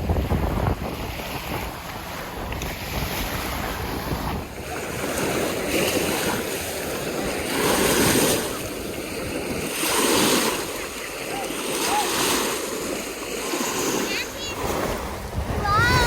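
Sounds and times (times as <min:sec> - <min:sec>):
lake waves breaking: 0:00.0 - 0:16.0
wind buffeting microphone: 0:00.0 - 0:16.0.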